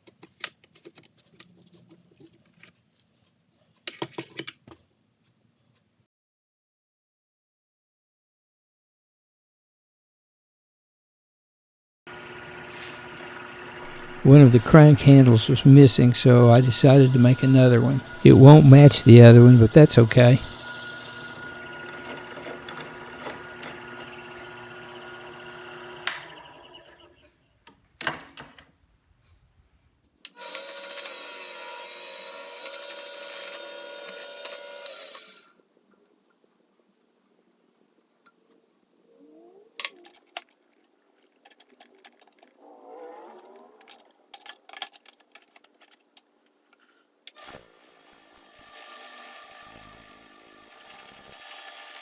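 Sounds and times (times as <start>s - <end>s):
clicks and knocks of handwork: 0.0s - 3.1s, 3.8s - 4.9s, 39.7s - 42.6s, 43.8s - 47.4s
power tool running: 12.1s - 27.2s, 30.4s - 35.5s, 47.4s - 52.0s.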